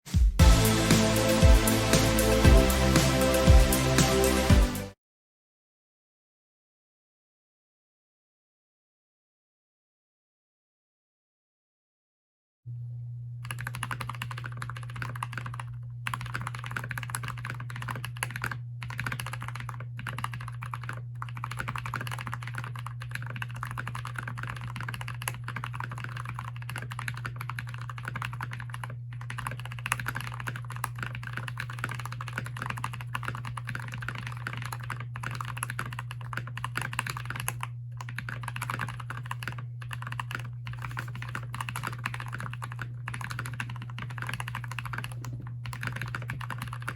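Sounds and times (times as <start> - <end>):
mechanical keyboard typing: 13.4 - 46.9.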